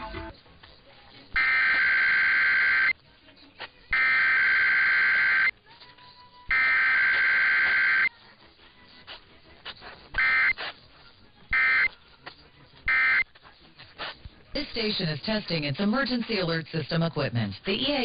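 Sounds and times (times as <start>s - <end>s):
harsh digital data tones: 1.2s - 3.0s, 3.9s - 5.6s, 6.5s - 8.1s, 10.1s - 10.6s, 11.5s - 12.0s, 12.9s - 13.3s.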